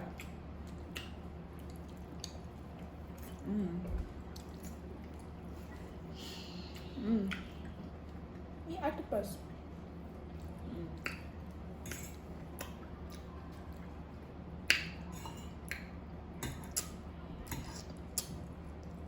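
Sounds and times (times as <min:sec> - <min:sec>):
low steady hum: 0:00.0 - 0:19.0
chewing: 0:00.1 - 0:06.1, 0:10.2 - 0:14.0.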